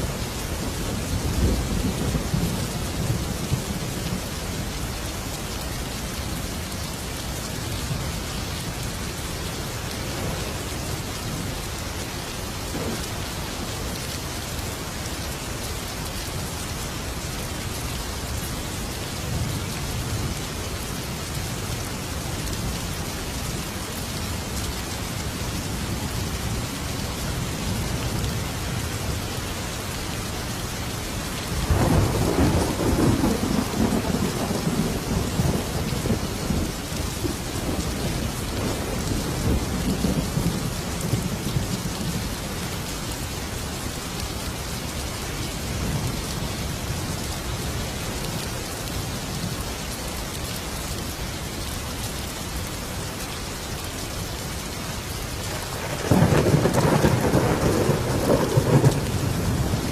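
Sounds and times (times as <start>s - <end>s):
heavy rain: 0.0s - 59.9s
thunder rumbling: 31.6s - 42.3s, 55.5s - 59.9s.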